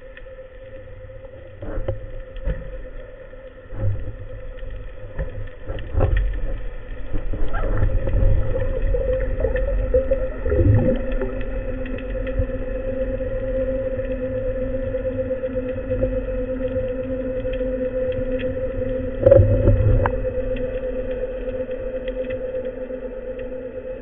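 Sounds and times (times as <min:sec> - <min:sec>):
underwater mechanical drone: 0:00.0 - 0:24.0
low thumps and water swishes: 0:01.6 - 0:13.3, 0:18.9 - 0:21.6.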